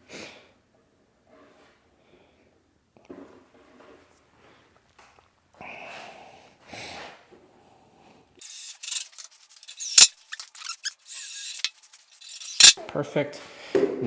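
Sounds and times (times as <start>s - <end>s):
wood scraping and rattling: 8.4s - 12.8s.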